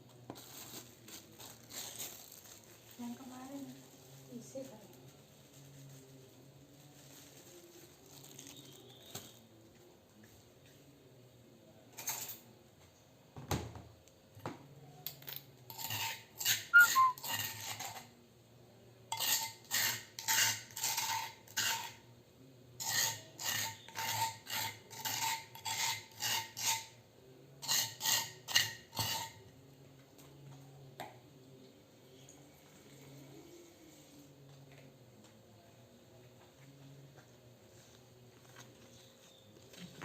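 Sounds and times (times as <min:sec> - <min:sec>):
metal utensil scraping cookware: 0:19.1 - 0:22.0, 0:22.8 - 0:27.0, 0:27.6 - 0:29.4.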